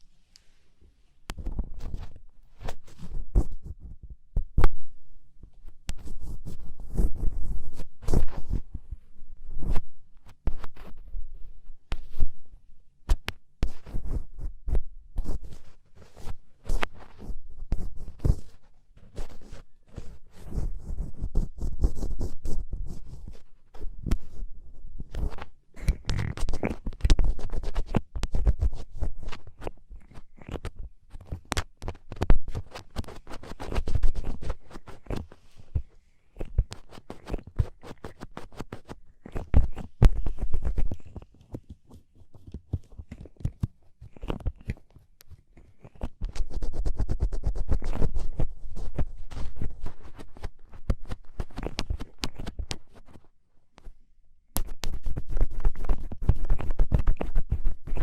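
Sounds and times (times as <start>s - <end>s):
ear pick scraping in ear: 25.2s - 41.3s.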